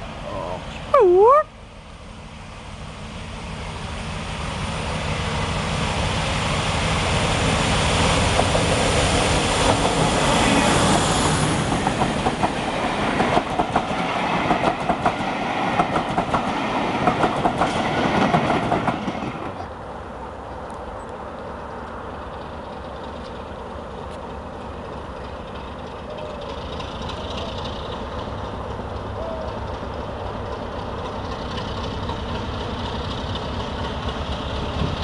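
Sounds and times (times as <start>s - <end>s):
diesel train passing: 0.0s - 35.0s
wheels clattering over rail joints: 22.2s - 35.0s.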